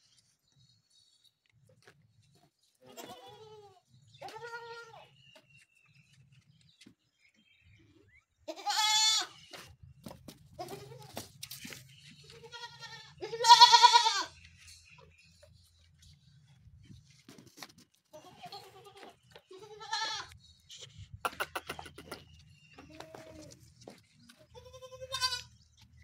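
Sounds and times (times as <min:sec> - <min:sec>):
goat kids bleating: 0:02.8 - 0:05.2, 0:08.5 - 0:09.5, 0:10.6 - 0:11.3, 0:12.2 - 0:14.4, 0:18.1 - 0:20.9, 0:24.4 - 0:25.7.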